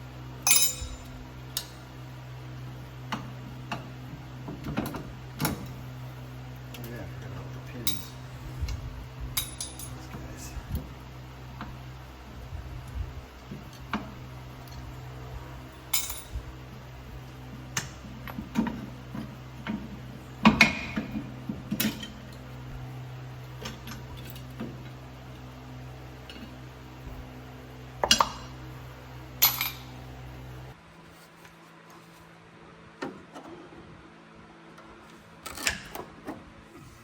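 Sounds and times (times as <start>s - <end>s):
low hum: 0.0s - 1.4s
metal tools clinking: 0.4s - 1.2s, 7.8s - 8.2s, 9.4s - 10.2s, 15.9s - 16.4s, 29.4s - 29.9s.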